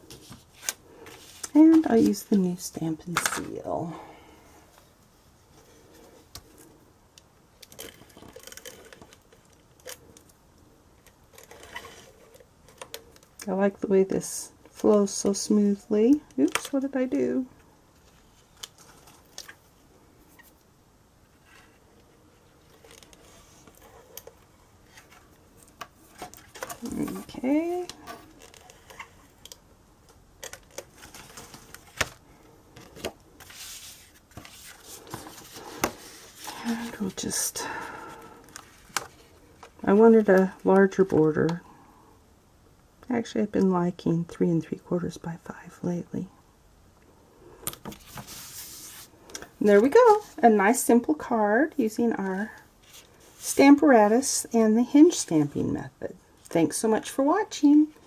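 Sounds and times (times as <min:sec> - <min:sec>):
papery rustle: 0:47.9 - 0:49.1.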